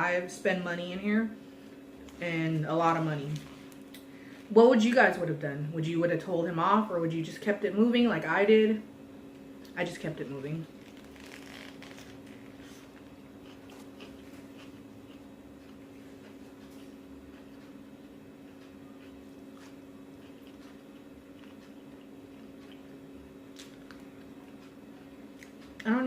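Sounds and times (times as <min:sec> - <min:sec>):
low electrical hum: 0:00.0 - 0:26.0
chewing and mouth clicks: 0:10.8 - 0:17.8, 0:18.4 - 0:25.9.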